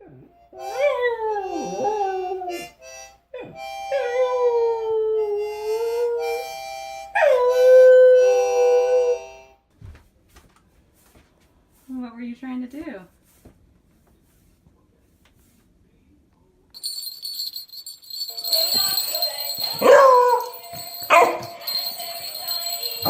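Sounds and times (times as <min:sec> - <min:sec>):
dog howling: 0:00.1 - 0:02.7, 0:19.8 - 0:21.7
harmonica chords: 0:00.2 - 0:09.7.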